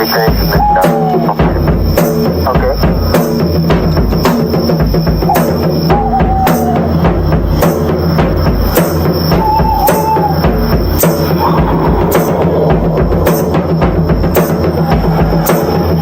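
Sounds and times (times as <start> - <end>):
drum kit solo: 0.0 - 16.0
low drone: 5.0 - 16.0
held high tone: 5.3 - 8.0, 9.3 - 14.1.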